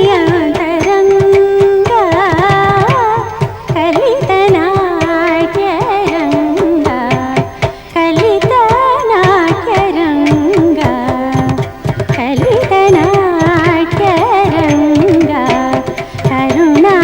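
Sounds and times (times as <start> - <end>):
hand-drum strokes: 0.0 - 17.0
person singing ornamented melody: 0.0 - 17.0.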